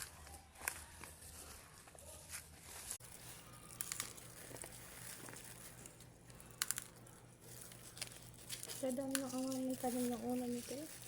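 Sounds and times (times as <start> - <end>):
faint low hum: 0.0 - 11.0
light crinkling and crackling: 2.3 - 11.0.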